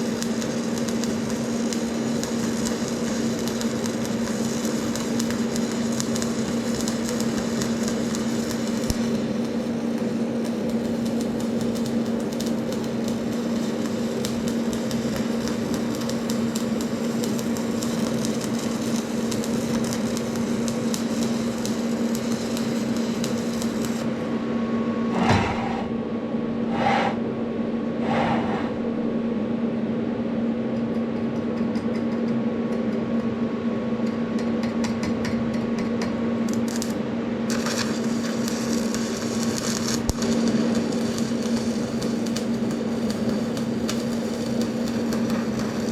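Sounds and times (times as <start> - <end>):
arc welding crackle: 0.0 - 24.2, 36.0 - 45.9
electrical hum: 0.0 - 30.7, 36.3 - 45.9
short scraping sounds: 25.1 - 26.0, 26.6 - 27.3, 27.9 - 28.9.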